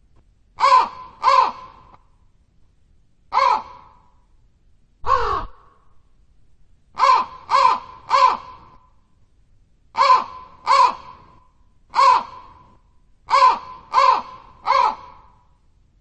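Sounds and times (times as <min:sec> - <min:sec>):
crow cawing: 0:00.6 - 0:01.9, 0:03.3 - 0:04.1, 0:05.0 - 0:05.9, 0:07.0 - 0:08.8, 0:10.0 - 0:12.7, 0:13.3 - 0:15.5.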